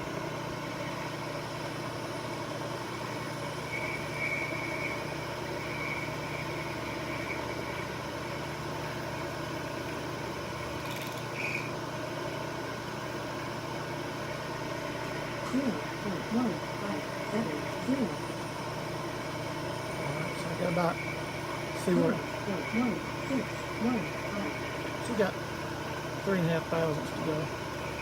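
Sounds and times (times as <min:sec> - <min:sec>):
faint high whine: 0:00.0 - 0:28.0
milling machine cutting metal: 0:15.0 - 0:28.0.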